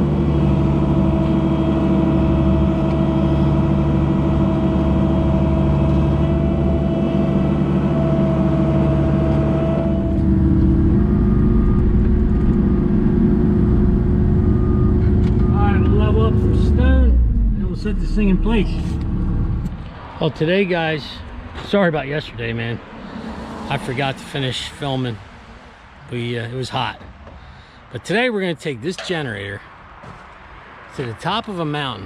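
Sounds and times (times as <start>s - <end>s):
engine running: 0.0s - 20.2s.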